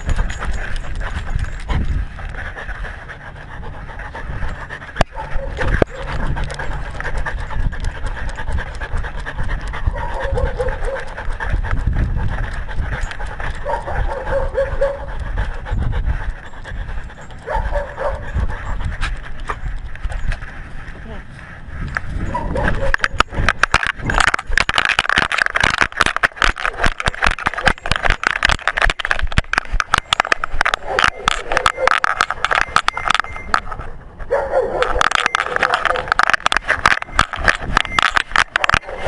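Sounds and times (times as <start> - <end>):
camera jostling rumble: 0.0 - 39.0
dog panting: 0.0 - 39.0.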